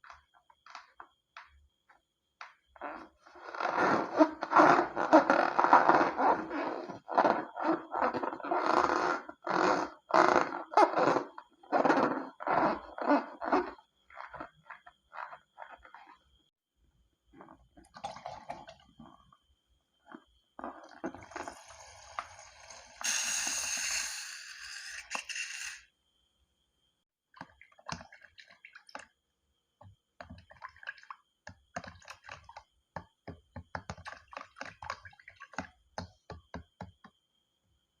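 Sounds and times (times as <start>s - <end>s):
steady hiss: 21.5s - 25.8s.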